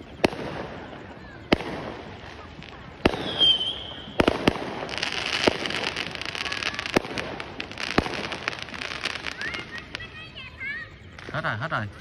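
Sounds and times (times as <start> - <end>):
firework bangs: 0.0 - 11.5
fireworks crackling: 0.0 - 12.0.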